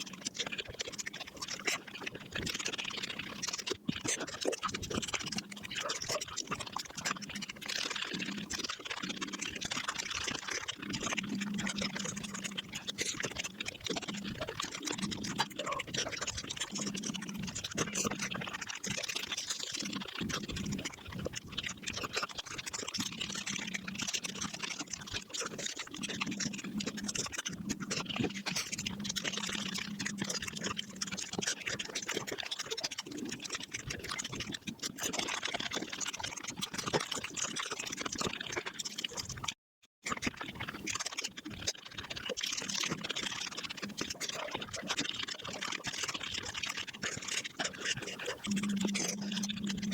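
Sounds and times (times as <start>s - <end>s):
sped-up wet chewing: 0.0s - 49.9s.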